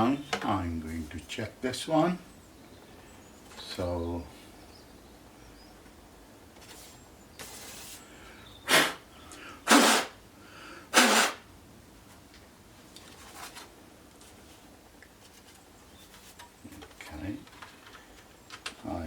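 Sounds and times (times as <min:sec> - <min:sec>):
person sneezing: 0:08.7 - 0:09.0, 0:09.7 - 0:10.2, 0:10.9 - 0:11.4.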